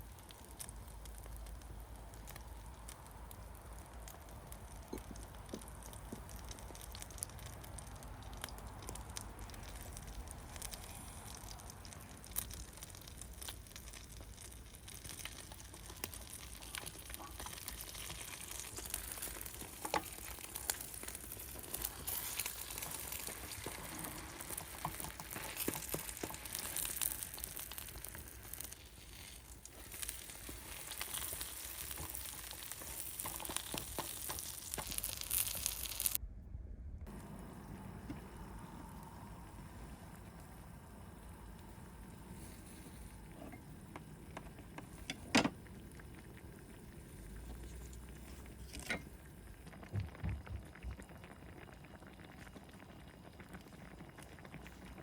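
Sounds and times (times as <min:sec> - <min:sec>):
wood fire crackling: 0:00.0 - 0:36.2, 0:37.0 - 0:55.0
food sizzling in a pan: 0:08.8 - 0:36.2.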